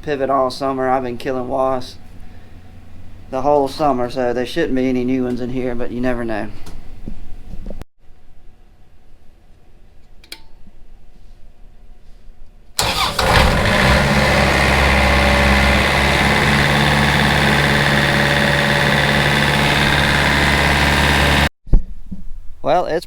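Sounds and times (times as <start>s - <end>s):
engine starting and running: 0.0s - 4.4s, 12.8s - 21.5s.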